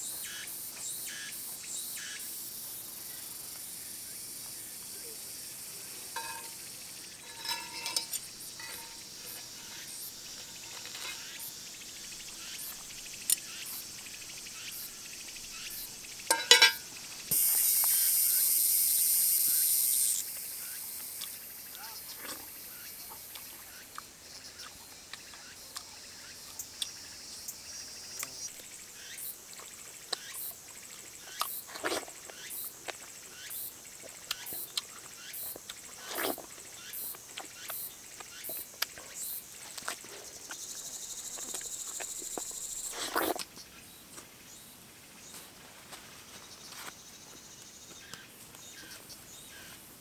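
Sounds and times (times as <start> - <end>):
regular high insect chirp: 0.0 - 44.8
insects buzzing: 0.0 - 45.3.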